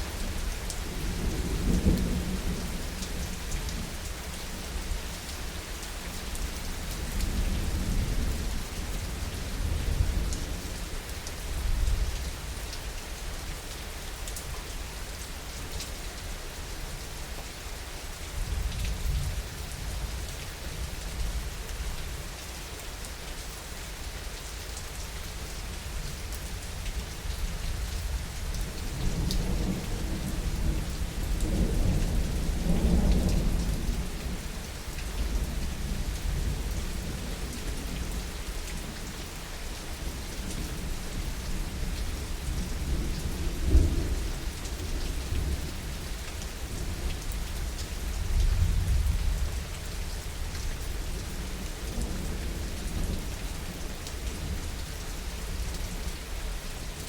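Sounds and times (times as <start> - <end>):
heavy rain: 0.0 - 57.0
low rolling thunder: 28.7 - 34.6.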